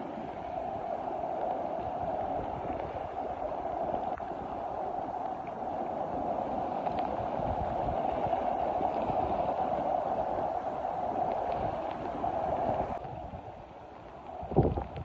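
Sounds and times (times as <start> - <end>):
rainwater rushing: 0.0 - 15.0
faint ticks: 2.7 - 7.6.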